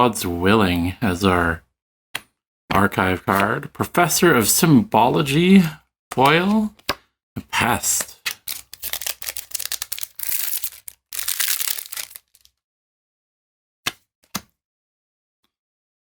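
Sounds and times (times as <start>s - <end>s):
foil wrapper crinkling and tearing: 8.3s - 12.6s.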